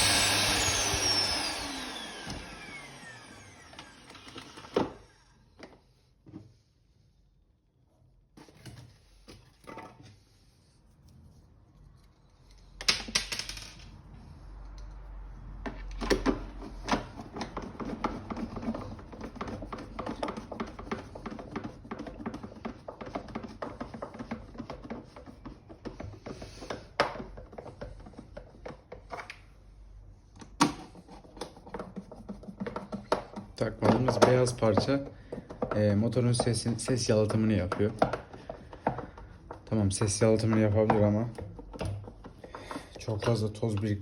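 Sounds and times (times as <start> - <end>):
plastic parts clicking and knocking: 12.5 - 13.9, 30.4 - 44.0
plastic parts clattering: 12.8 - 13.9.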